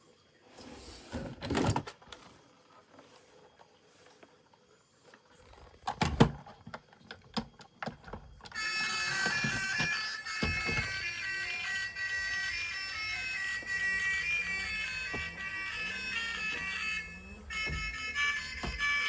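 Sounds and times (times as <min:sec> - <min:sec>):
background music bright melody: 0:08.6 - 0:19.0
sharp knocks and clicks: 0:17.5 - 0:19.0.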